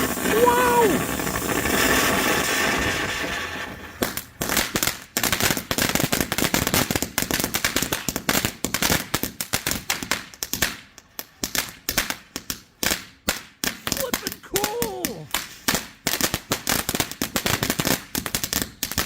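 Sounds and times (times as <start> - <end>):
firework hiss: 0.0 - 6.3
firework crackling pops: 0.0 - 19.0.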